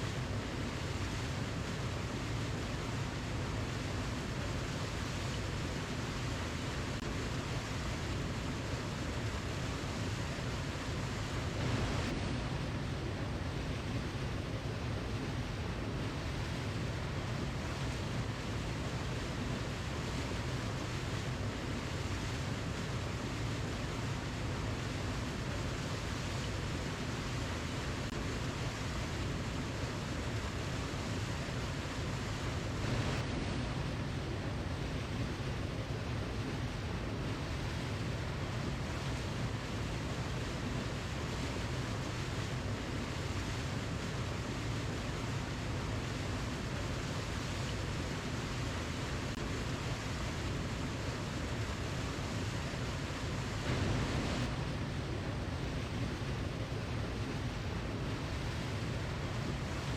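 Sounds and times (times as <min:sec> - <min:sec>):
waterfall rushing: 0:47.3 - 0:58.1.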